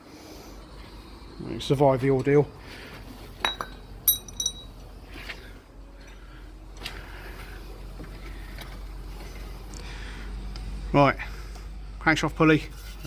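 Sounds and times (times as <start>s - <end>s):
metal parts clinking: 3.4s - 4.8s.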